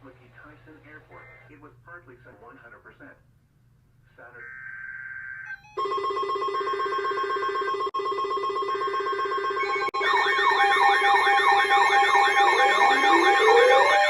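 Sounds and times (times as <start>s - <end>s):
fast-warbling ringing tone: 4.4s - 6.8s, 9.6s - 14.0s
siren sweeping up and down: 4.4s - 7.6s, 9.2s - 14.0s.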